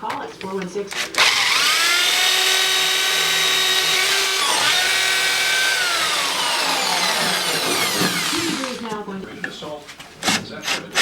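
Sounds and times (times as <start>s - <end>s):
power tool motor whining: 0.9s - 8.9s.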